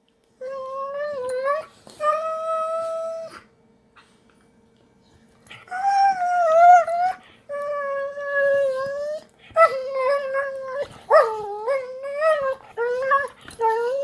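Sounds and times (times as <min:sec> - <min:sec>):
pet whining cries: 0:05.6 - 0:14.0.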